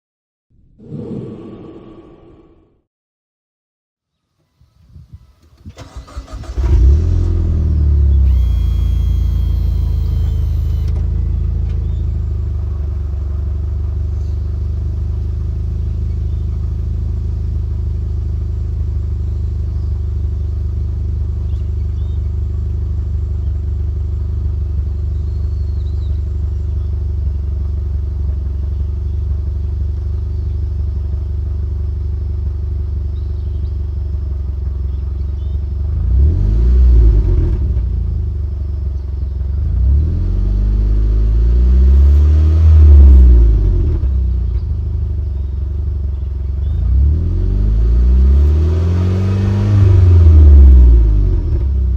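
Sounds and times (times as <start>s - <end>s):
engine revving: 5.8s - 12.0s, 35.4s - 38.3s, 39.5s - 44.6s, 46.6s - 51.8s
car engine idling: 7.2s - 36.3s, 37.1s - 39.9s, 43.5s - 46.9s.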